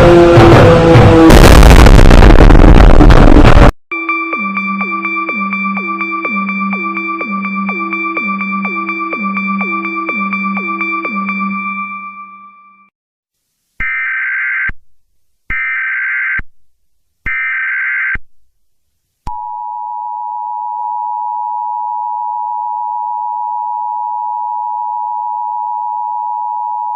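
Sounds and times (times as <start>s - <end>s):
digital header tone blasts: 0.0s - 12.6s
two-tone attention signal: 3.9s - 12.8s.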